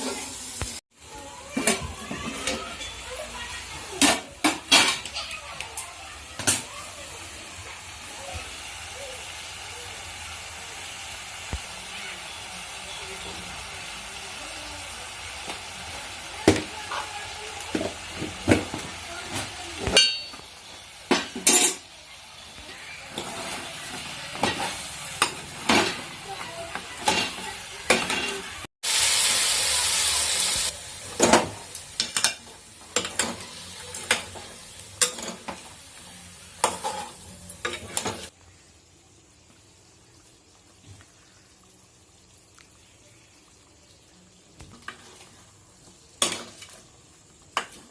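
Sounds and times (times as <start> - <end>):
curry sizzling in a pan: 0.0 - 47.9
metal ladle scraping a pan: 36.6 - 38.3.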